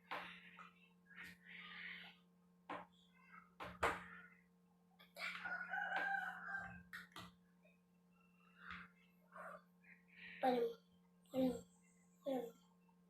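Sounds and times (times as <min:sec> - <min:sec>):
rooster crowing: 0:05.4 - 0:06.9.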